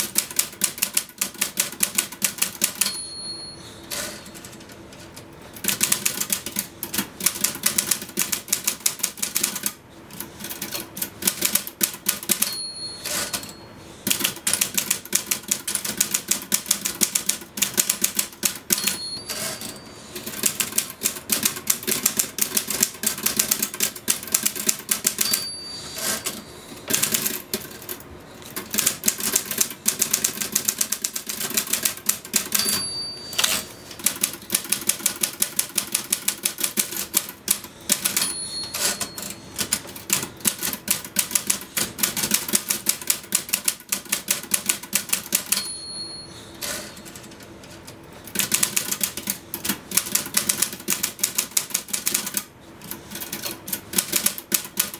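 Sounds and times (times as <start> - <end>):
typewriter bell ringing: 2.6 - 4.6, 12.1 - 13.8, 17.9 - 20.9, 24.9 - 27.2, 32.3 - 34.3, 37.8 - 39.8, 45.2 - 47.2.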